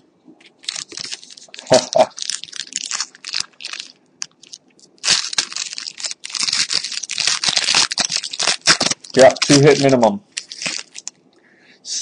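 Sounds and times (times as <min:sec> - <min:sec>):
packaging crinkling and rustling: 0:00.4 - 0:11.2.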